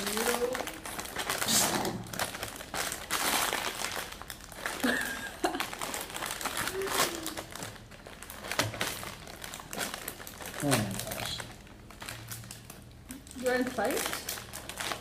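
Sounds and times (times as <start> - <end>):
plastic wrapper crinkling: 0.0 - 15.0.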